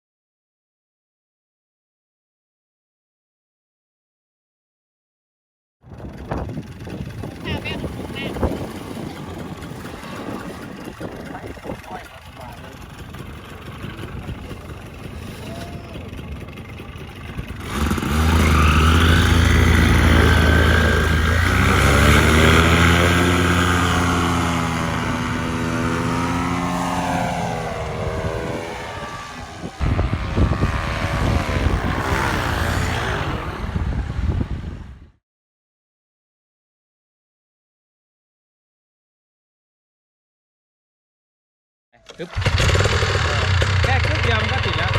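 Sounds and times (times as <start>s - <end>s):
paramotor engine revving: 6.1s - 35.0s, 42.1s - 44.9s.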